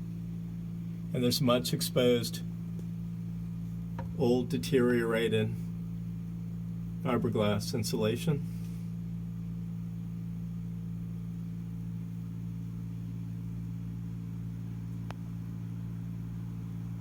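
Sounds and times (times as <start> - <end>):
ventilation equipment humming: 0.0 - 17.0.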